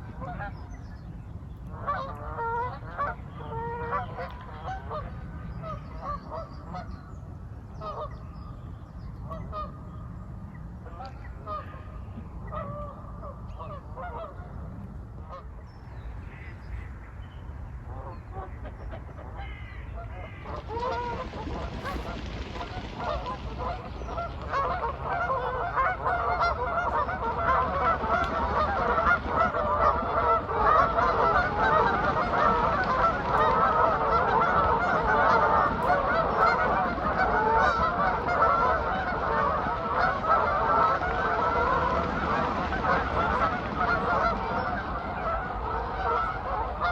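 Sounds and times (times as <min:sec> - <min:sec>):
geese honking: 0:01.7 - 0:06.9, 0:18.0 - 0:46.9.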